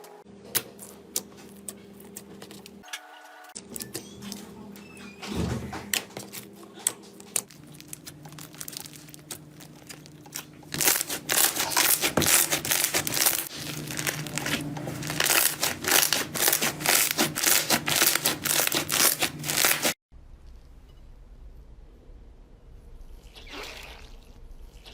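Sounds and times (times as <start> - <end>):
slime crackling and popping: 7.3 - 20.0.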